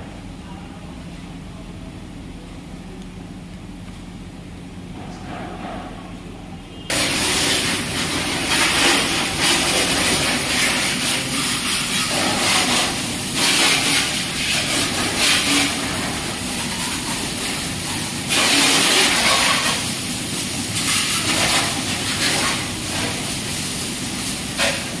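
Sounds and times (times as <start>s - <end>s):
pressure washer jet hissing: 6.9s - 25.0s.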